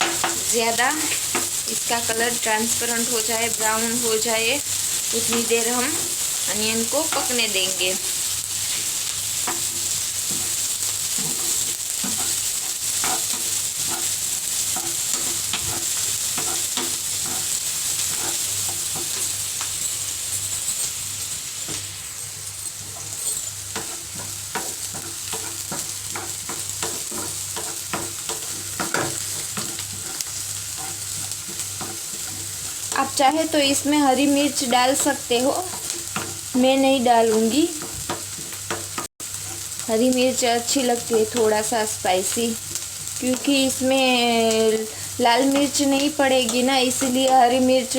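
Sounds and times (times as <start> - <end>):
spoon scraping a pan: 0.0 - 1.7, 4.6 - 40.0
onions sizzling in oil: 0.0 - 47.9.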